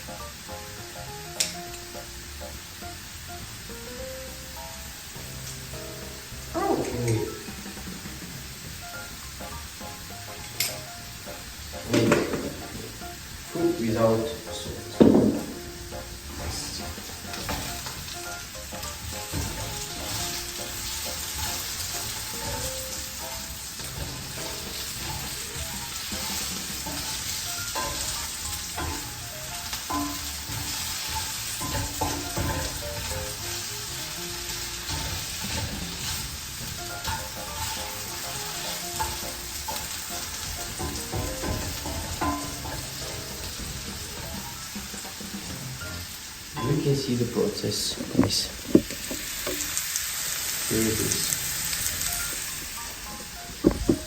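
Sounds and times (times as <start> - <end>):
potatoes sizzling in a pan: 0.0 - 54.0
short knocks: 15.0 - 15.6, 48.2 - 49.6, 53.6 - 54.0.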